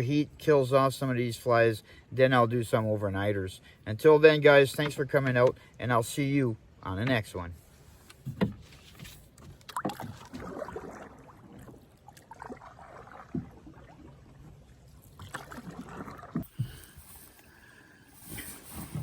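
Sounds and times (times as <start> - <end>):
paddle water swishing: 7.6 - 19.0
knocks and thumps on hull: 8.2 - 11.9, 12.8 - 14.0.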